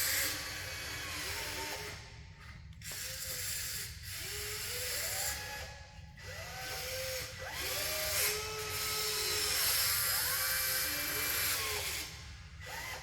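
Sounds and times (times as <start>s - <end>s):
small electric motors whining: 6.3s - 13.0s.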